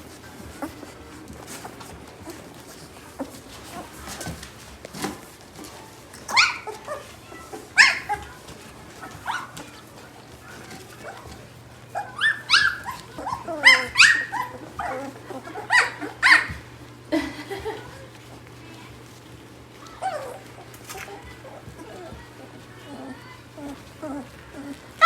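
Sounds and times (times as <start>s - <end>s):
puppies crying and yelping: 0.0s - 25.0s.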